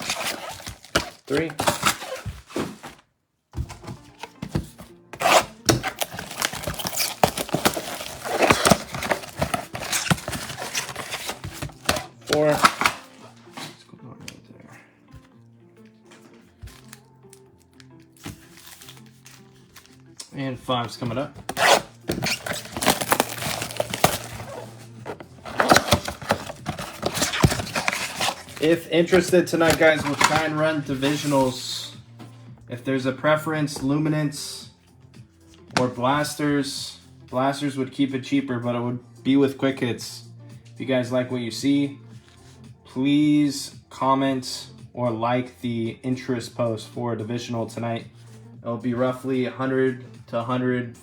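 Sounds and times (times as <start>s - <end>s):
cardboard and plastic tearing: 0.0s - 3.0s, 3.6s - 13.8s, 16.6s - 20.3s, 21.0s - 31.6s
packaging crinkling: 0.0s - 3.0s, 5.2s - 13.4s, 21.5s - 31.4s
handling clicks and rustles: 3.6s - 13.8s, 20.9s - 31.5s.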